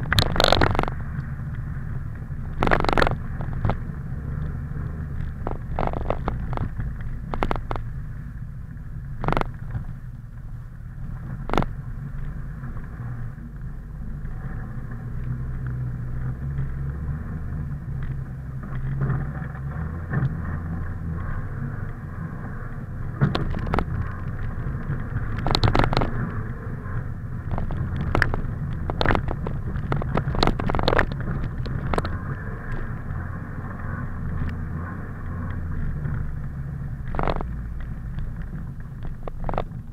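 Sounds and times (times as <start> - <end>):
sharp knocks and rattles: 0.0 - 1.6, 2.3 - 7.9, 23.1 - 26.6, 27.4 - 34.7, 35.4 - 39.9
car engine running at low revs: 0.0 - 39.9.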